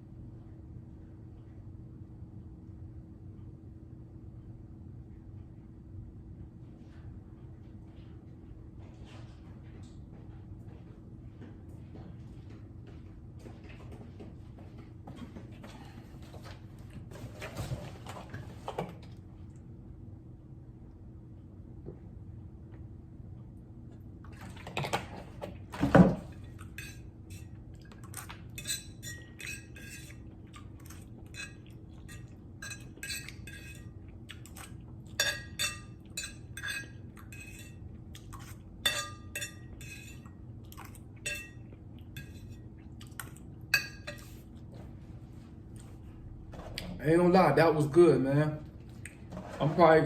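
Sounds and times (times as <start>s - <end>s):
metal utensil clinking on dish: 26.6s - 27.5s, 28.6s - 30.2s, 30.8s - 33.9s, 35.2s - 37.8s, 38.8s - 40.3s, 41.3s - 41.6s, 43.8s - 44.3s.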